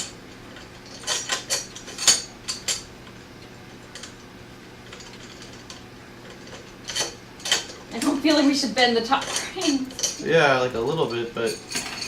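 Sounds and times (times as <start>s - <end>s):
metal parts clicking and tapping: 0.0s - 2.9s, 6.4s - 10.2s.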